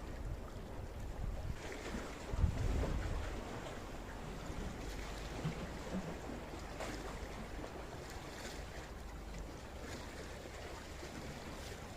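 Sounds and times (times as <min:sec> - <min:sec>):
wind rumbling on microphone: 0:00.0 - 0:08.3.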